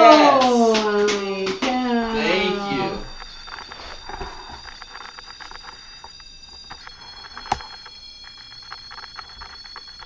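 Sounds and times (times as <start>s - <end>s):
high-pitched electronic whine: 2.7s - 10.0s
faint crackling clicks: 3.1s - 10.0s.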